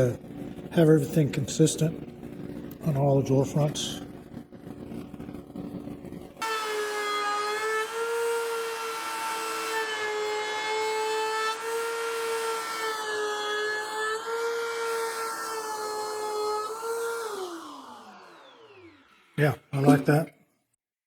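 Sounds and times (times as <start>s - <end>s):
power tool motor whining: 6.4s - 20.2s.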